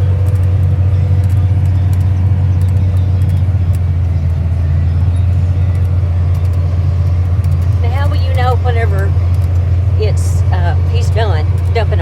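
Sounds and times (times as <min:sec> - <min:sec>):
tractor diesel engine droning: 0:00.0 - 0:12.0
faint light ticks: 0:01.2 - 0:04.4.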